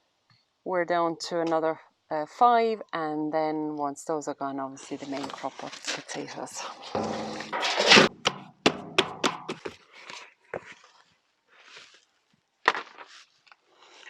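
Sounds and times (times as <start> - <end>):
plastic pot knocking: 7.0 - 9.7.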